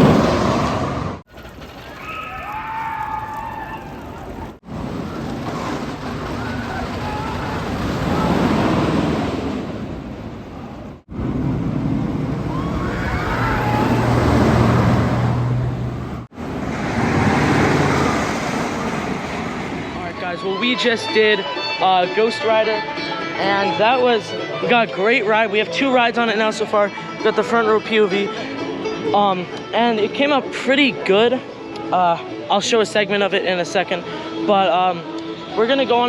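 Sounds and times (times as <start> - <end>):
roller coaster rumbling past: 0.0 - 20.8
riders screaming: 1.4 - 9.4, 12.4 - 14.8.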